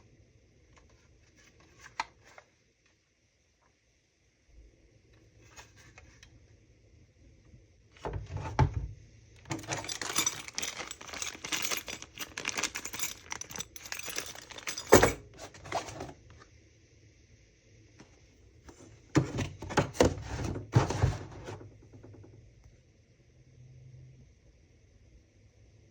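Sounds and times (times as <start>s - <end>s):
packaging crinkling and clattering: 9.4s - 16.2s, 18.7s - 21.6s.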